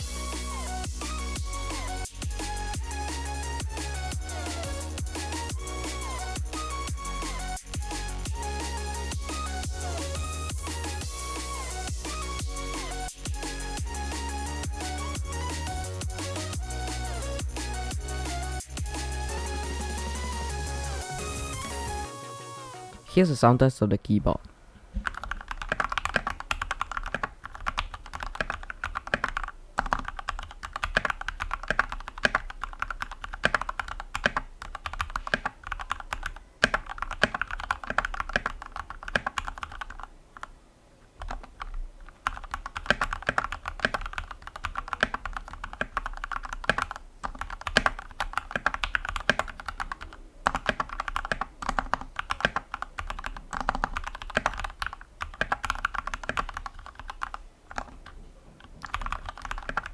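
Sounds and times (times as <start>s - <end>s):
fast mechanical keyboard typing: 25.0s - 40.5s, 41.2s - 59.9s.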